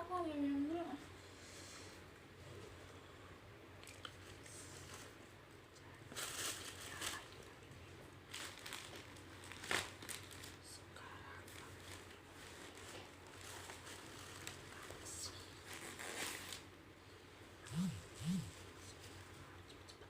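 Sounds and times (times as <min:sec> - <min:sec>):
packaging crinkling: 0:08.3 - 0:10.7.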